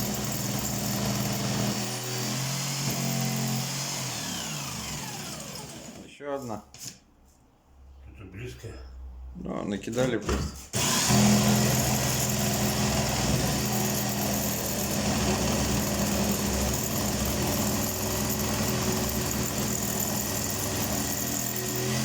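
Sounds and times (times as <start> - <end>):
power tool motor running: 0.0 - 6.0, 10.8 - 22.0.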